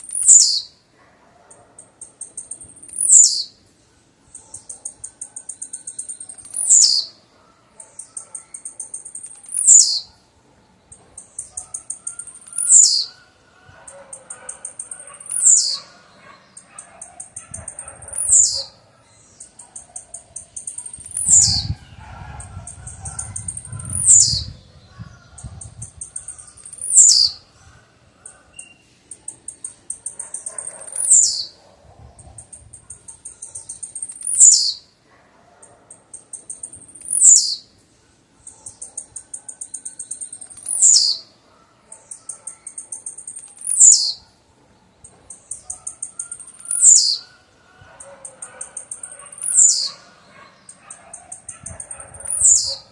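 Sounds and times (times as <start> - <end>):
bird singing high ticks: 0.0 - 0.7, 1.4 - 3.7, 4.3 - 7.2, 7.8 - 10.2, 10.8 - 13.2, 13.8 - 21.8, 22.4 - 24.5, 25.3 - 27.4, 28.2 - 31.6, 32.2 - 34.8, 35.6 - 37.8, 38.4 - 41.3, 41.9 - 44.3, 45.0 - 52.9.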